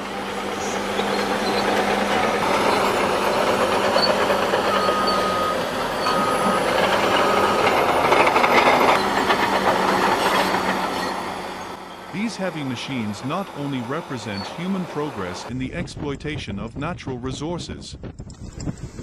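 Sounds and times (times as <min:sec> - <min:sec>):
heavy machinery running: 0:00.0 - 0:16.2
reversing alarm beeping: 0:02.6 - 0:09.3.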